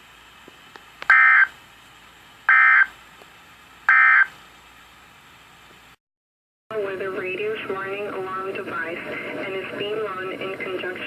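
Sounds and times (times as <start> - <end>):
faint radio hiss: 6.7 - 11.0.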